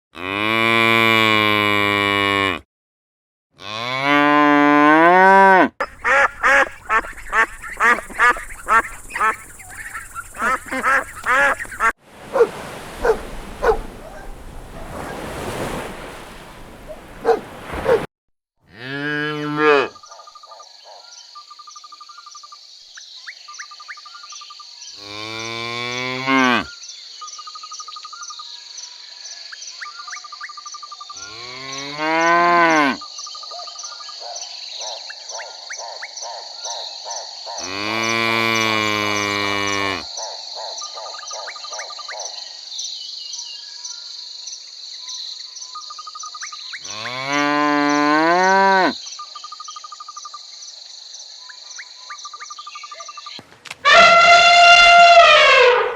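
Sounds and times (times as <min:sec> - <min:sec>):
cows mooing: 0:00.2 - 0:02.6, 0:03.6 - 0:06.6, 0:12.3 - 0:14.2, 0:17.2 - 0:18.0, 0:18.7 - 0:20.0, 0:25.0 - 0:26.7, 0:31.3 - 0:33.0, 0:37.6 - 0:40.0, 0:46.9 - 0:49.0
duck-like quacking calls: 0:05.8 - 0:13.8
crickets chirping: 0:05.8 - 0:18.0, 0:20.0 - 0:53.4.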